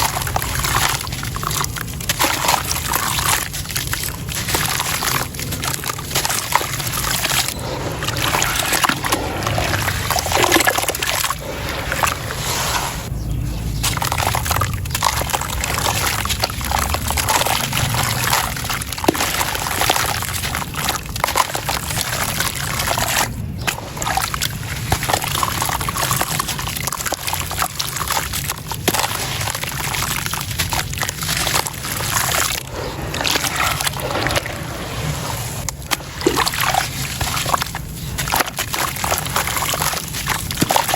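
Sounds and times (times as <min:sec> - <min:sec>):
sand and stone crumbling: 0:00.0 - 0:40.9
water sloshing and trickling: 0:00.0 - 0:40.9.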